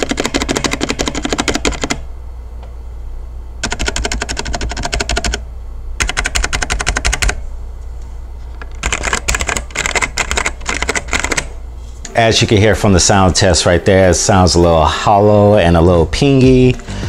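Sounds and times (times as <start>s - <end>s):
fast typing on mechanical keyboard: 0.0s - 2.0s, 3.6s - 5.4s, 6.0s - 7.4s, 8.7s - 11.5s.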